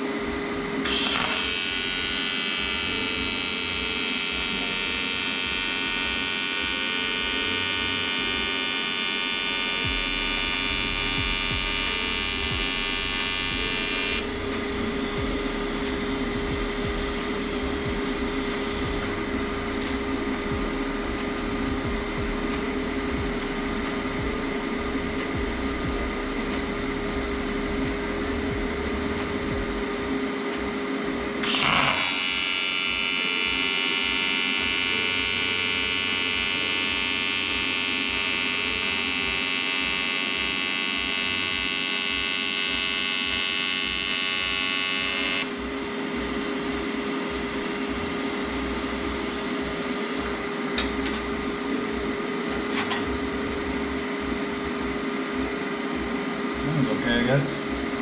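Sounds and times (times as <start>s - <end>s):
low hum: 0.0s - 39.6s, 45.4s - 56.8s
welding arc buzzing: 0.8s - 30.8s, 31.4s - 54.8s.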